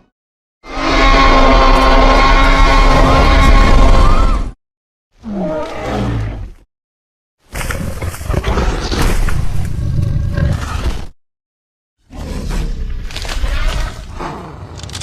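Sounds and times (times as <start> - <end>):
monster roar: 0.7 - 4.5.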